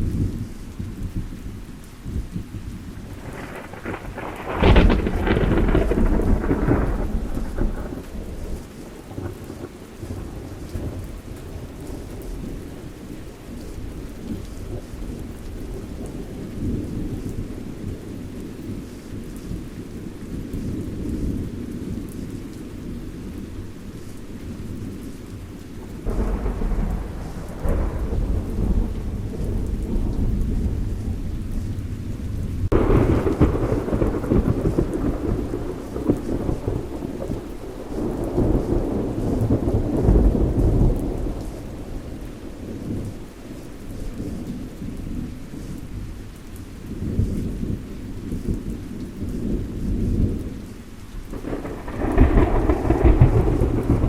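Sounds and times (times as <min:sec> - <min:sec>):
low rumble of thunder: 0:00.0 - 0:54.0
steady rain: 0:00.0 - 0:54.0
thunderclap: 0:02.1 - 0:11.0, 0:25.9 - 0:43.2, 0:51.3 - 0:54.0.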